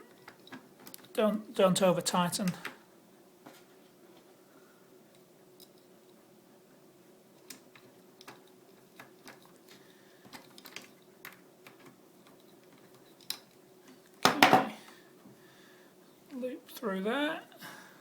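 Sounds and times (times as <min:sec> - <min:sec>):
screwdriver and metal parts clicking: 0:07.4 - 0:13.6.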